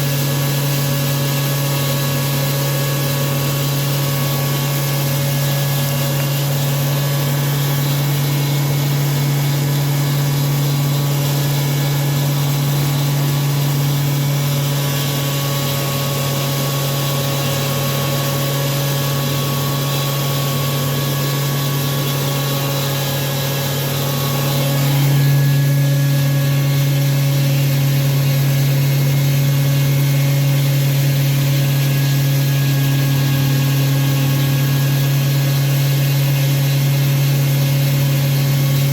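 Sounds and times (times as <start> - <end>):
disk mill humming: 0.0 - 36.0
suction system: 0.0 - 38.9.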